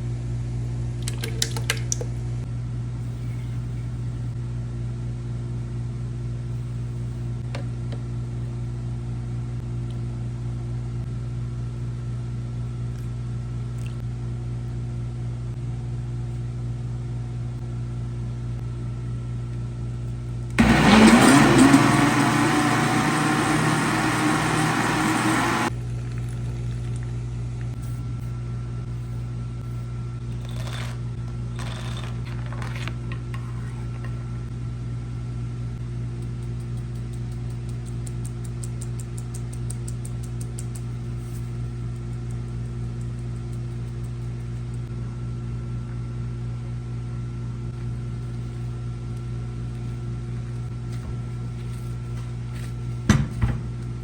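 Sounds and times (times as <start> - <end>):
blender motor running: 20.6 - 27.1.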